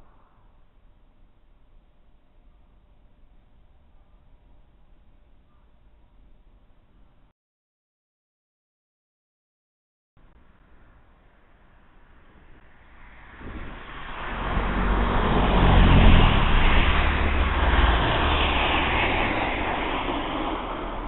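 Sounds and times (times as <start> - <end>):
vehicle passing: 12.3 - 21.0.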